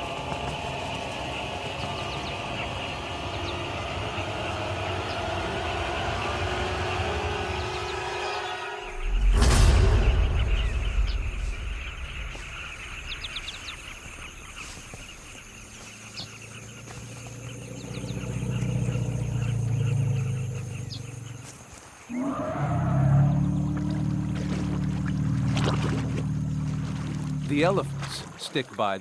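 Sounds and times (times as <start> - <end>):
deep rumbling animal call: 0.0 - 28.4
deep pitched sound: 4.0 - 15.6
bird calls chattering: 10.0 - 25.1.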